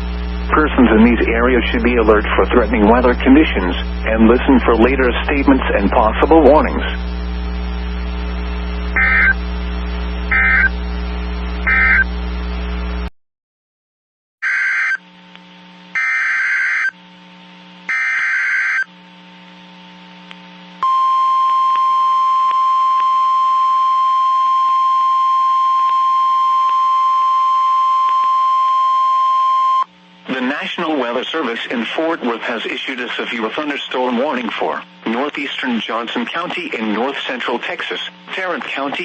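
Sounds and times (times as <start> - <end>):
low hum: 0.0 - 13.1
steady loud alert tone: 9.0 - 9.4, 10.3 - 10.7, 11.7 - 12.0, 14.4 - 15.0, 16.0 - 16.9, 17.9 - 18.9.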